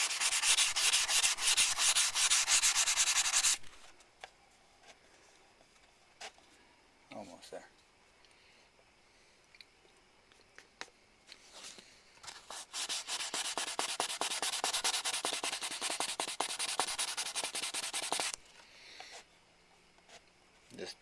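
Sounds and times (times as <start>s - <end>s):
sandpaper rubbing on plastic: 0.0s - 3.7s, 12.3s - 18.4s.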